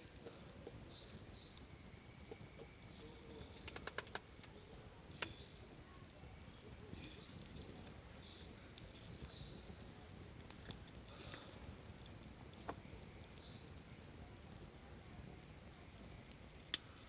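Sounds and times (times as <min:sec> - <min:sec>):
campfire crackling and popping: 0:00.0 - 0:17.0
low steady background: 0:00.0 - 0:17.0.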